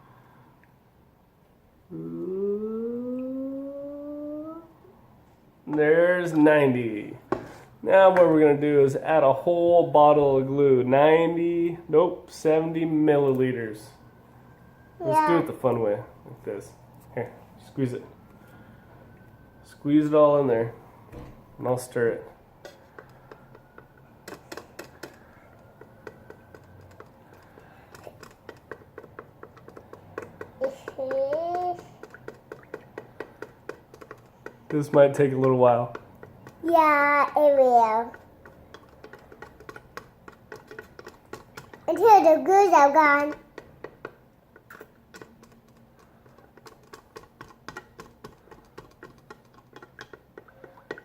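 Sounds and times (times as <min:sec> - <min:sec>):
stick clicking against a cup: 0:22.7 - 0:36.7, 0:38.1 - 0:41.9, 0:43.3 - 0:51.0.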